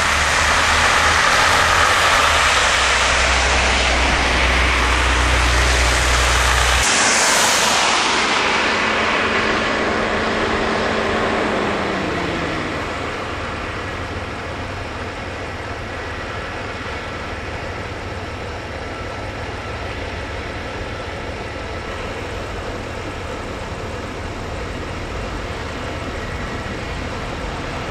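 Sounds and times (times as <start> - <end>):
vehicle passing by: 0.0 - 14.4
steady traffic noise: 0.0 - 27.9.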